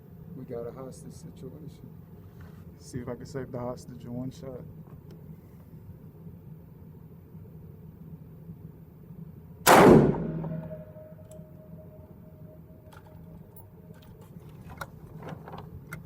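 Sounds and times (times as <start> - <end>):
rifle shot: 9.6 - 11.2.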